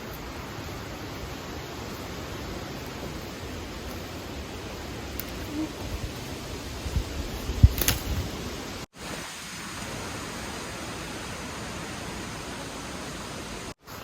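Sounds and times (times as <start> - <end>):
heavy rain: 0.0 - 14.0
brief rustle: 5.1 - 8.5.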